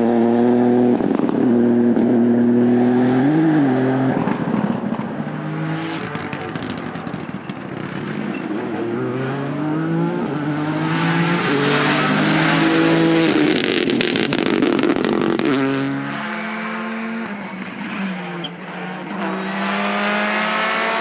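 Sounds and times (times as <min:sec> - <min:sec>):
rally car accelerating: 0:00.0 - 0:21.0
sharp crackles: 0:04.2 - 0:08.9.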